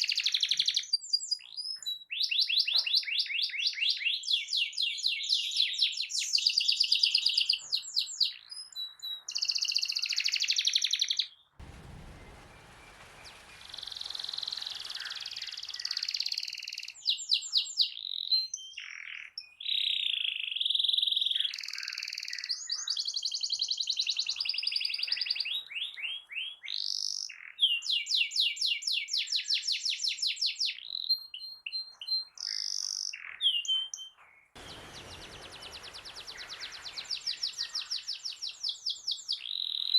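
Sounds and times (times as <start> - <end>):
low rushing background noise: 11.6 - 15.6, 34.6 - 38.6
canary singing trills: 30.9 - 39.9.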